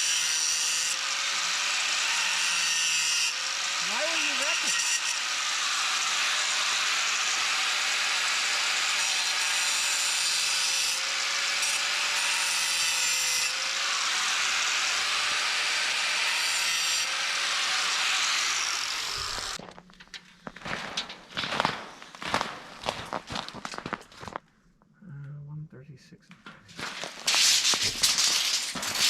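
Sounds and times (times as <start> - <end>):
power saw cutting wood: 0.0 - 19.6, 27.0 - 29.0.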